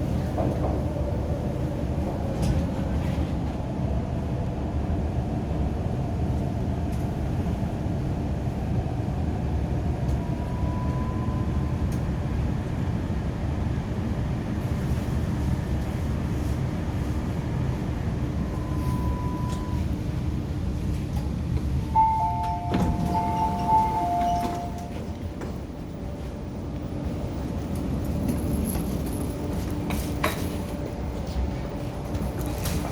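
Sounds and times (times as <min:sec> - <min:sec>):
train wheels rumbling: 0:09.8 - 0:32.9
brief train whines: 0:10.1 - 0:12.8, 0:18.2 - 0:20.1, 0:21.8 - 0:26.5
two steady high tones: 0:21.9 - 0:25.1.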